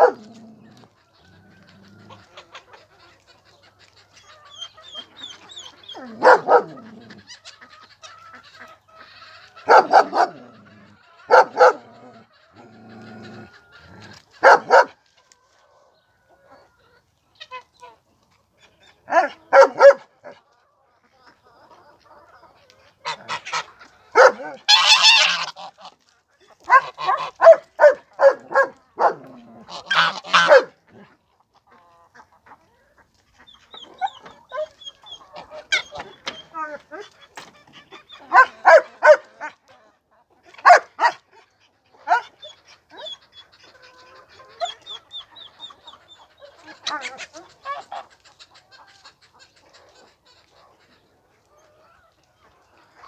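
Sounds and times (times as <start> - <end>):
fowl calling harshly: 1.3 - 12.0, 13.0 - 14.9, 23.0 - 26.0, 26.6 - 31.0, 33.3 - 39.6, 42.0 - 51.0.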